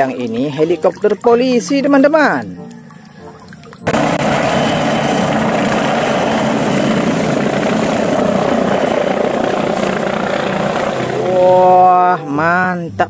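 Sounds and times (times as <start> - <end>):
helicopter rotor and engine: 3.8 - 12.2.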